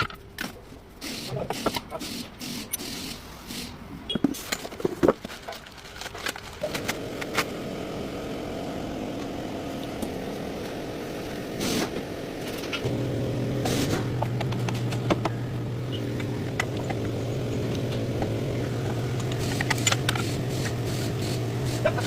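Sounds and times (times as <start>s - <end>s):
car running with steady hum: 6.8s - 22.0s
sharp clicks and knocks: 13.6s - 21.1s.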